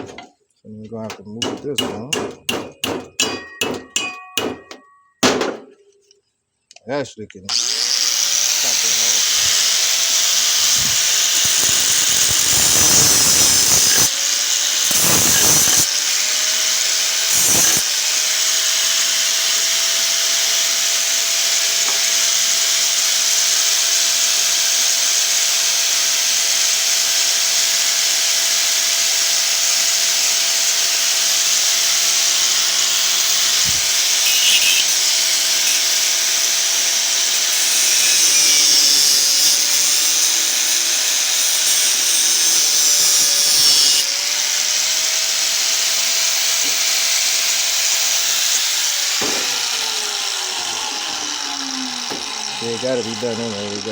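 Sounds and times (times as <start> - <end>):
angle grinder cutting metal: 1.0 - 4.9, 7.5 - 53.9
knocks: 1.1 - 5.8.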